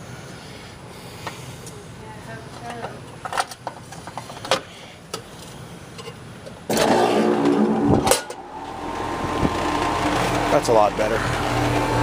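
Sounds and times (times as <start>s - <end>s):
compressor humming: 0.0s - 12.0s.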